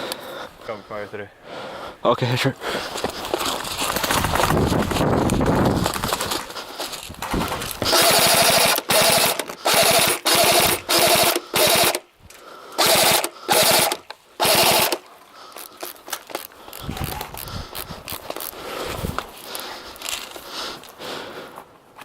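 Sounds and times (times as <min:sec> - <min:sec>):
airsoft gun firing bursts: 0:07.8 - 0:12.1, 0:12.8 - 0:15.1.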